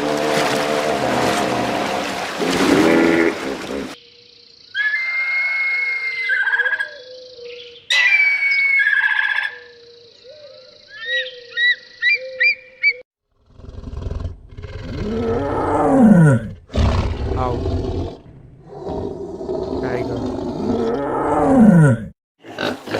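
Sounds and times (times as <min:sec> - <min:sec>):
bird calls: 0:04.6 - 0:13.0
deep animal growl: 0:13.3 - 0:22.9.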